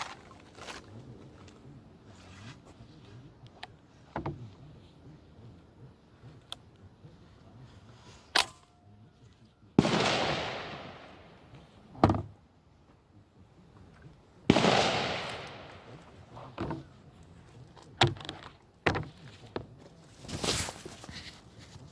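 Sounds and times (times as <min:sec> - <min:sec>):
shotgun blasts with echo: 0:09.8 - 0:11.6, 0:14.5 - 0:16.4.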